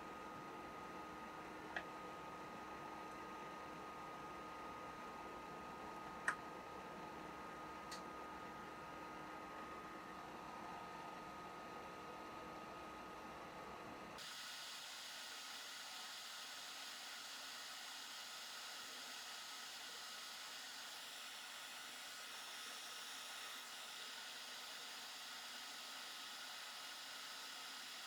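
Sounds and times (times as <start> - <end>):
faint hiss: 14.2 - 28.0.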